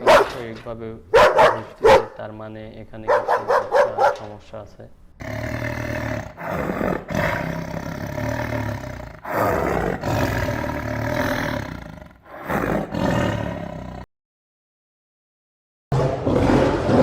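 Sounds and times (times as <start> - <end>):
animal roaring: 5.2 - 14.1, 16.0 - 17.0.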